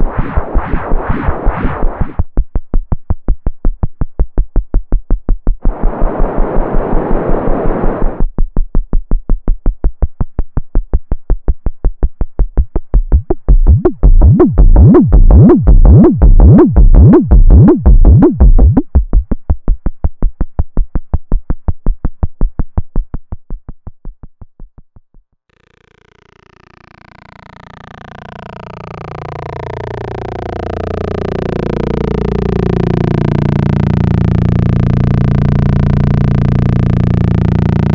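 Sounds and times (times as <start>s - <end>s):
synthesizer bass note repeating: 0.0s - 2.3s, 5.6s - 8.3s, 12.5s - 19.3s, 25.6s - 37.9s.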